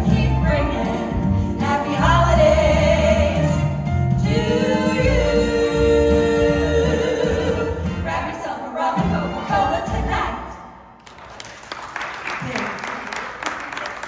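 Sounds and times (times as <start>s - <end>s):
female vocal group singing in harmony: 0.0s - 10.7s.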